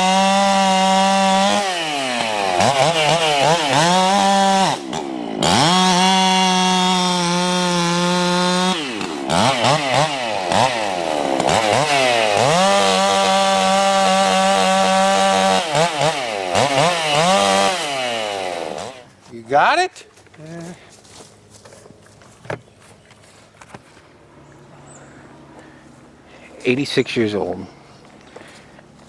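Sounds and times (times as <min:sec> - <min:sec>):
chainsaw cutting wood: 0:00.0 - 0:19.2.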